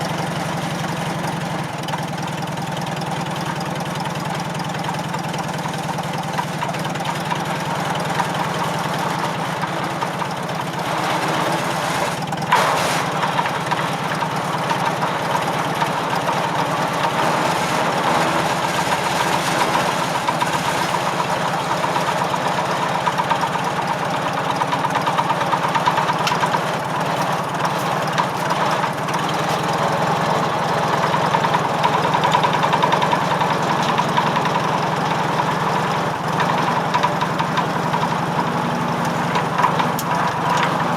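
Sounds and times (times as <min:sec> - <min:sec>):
tractor engine running: 0:00.0 - 0:40.9
circular saw: 0:10.8 - 0:13.7, 0:16.0 - 0:23.1.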